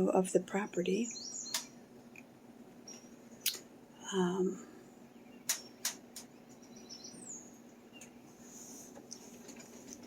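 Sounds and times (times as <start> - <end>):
low steady hum: 0.0 - 10.0
faint bird chirps: 0.5 - 1.9, 2.8 - 8.8
sharp clicks: 1.5 - 2.3, 5.4 - 6.3.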